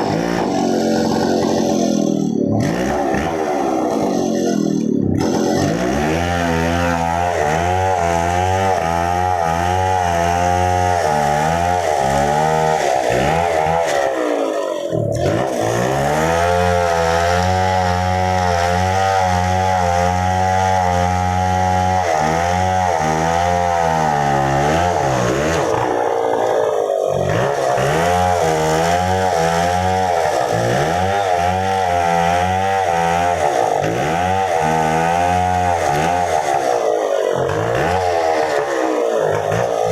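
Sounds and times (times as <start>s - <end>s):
chainsaw cutting tree: 0.0s - 39.9s.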